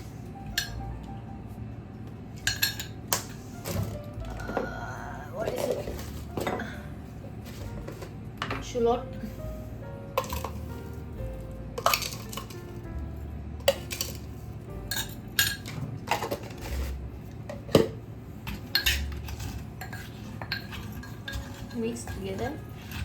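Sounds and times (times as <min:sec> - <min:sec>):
utensils clinking against a dish: 0:02.4 - 0:04.7, 0:10.2 - 0:10.7, 0:11.8 - 0:12.8, 0:13.6 - 0:23.0.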